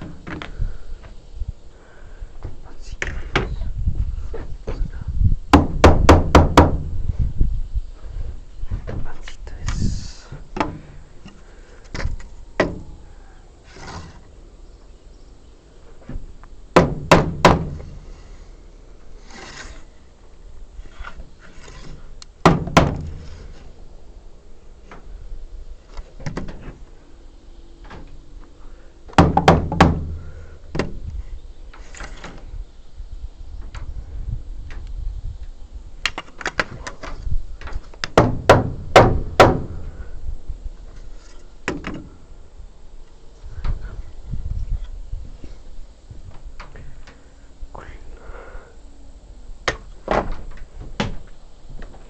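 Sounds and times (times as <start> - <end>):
knocks and thuds on wood: 5.5 - 7.0, 10.6 - 10.8, 11.9 - 12.9, 16.8 - 17.9, 22.4 - 23.2, 29.1 - 31.0, 38.0 - 39.8, 49.7 - 52.0.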